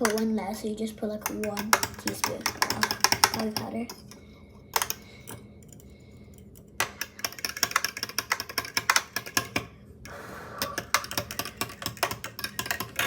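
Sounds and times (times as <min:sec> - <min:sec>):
spoon clinking in a cup: 0:10.7 - 0:13.0.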